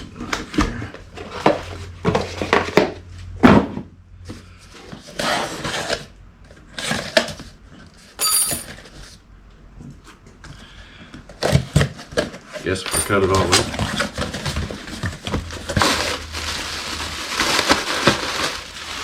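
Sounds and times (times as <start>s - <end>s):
cardboard rustling and knocks: 0.4s - 3.9s, 11.4s - 16.2s.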